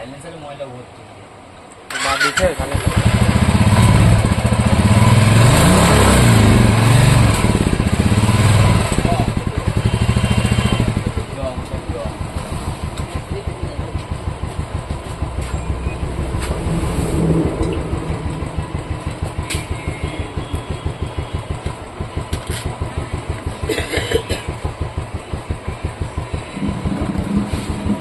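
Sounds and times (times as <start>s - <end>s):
motorcycle engine idling: 6.6s - 28.0s.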